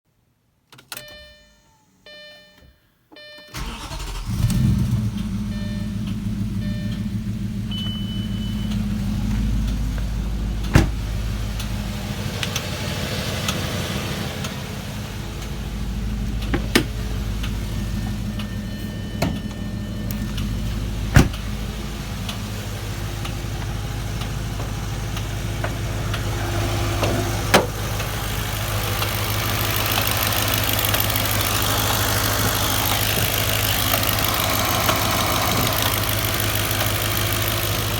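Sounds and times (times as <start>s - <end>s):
dashboard warning chimes: 0.9s - 4.6s, 5.2s - 10.0s, 15.4s - 22.4s
car engine starting and idling: 3.2s - 37.9s
sharp engine clicks: 11.4s - 11.8s, 23.2s - 26.3s, 27.9s - 37.9s.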